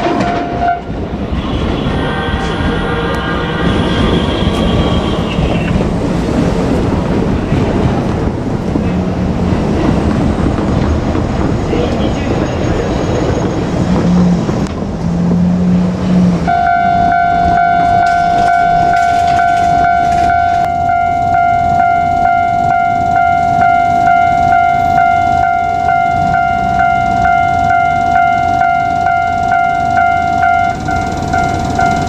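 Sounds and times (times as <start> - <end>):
train rumbling past: 0.0 - 32.0
level crossing bell ringing: 16.5 - 32.0.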